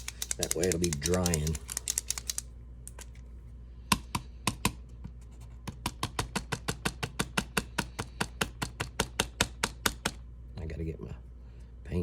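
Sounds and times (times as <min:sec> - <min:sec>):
paint pen clicking: 0:00.0 - 0:03.0.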